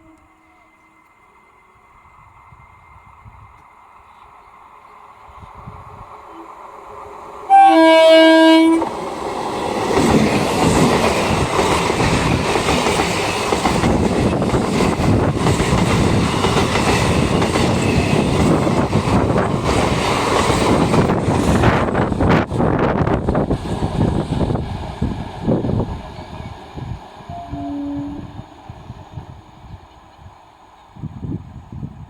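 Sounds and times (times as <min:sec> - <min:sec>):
train horn blast: 0:06.3 - 0:06.6, 0:07.5 - 0:08.9, 0:27.3 - 0:28.7.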